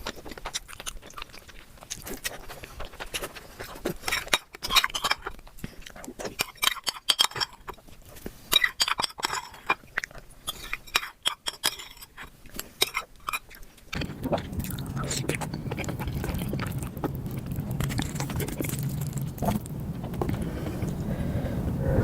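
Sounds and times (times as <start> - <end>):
close-miked chewing: 0.0 - 22.0.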